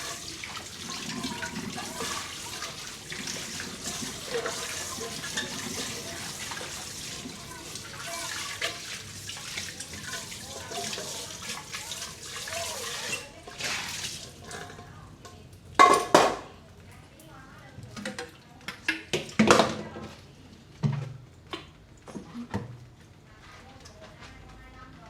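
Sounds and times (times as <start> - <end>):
tap water splashing in sink: 0.0 - 16.4, 17.8 - 20.0.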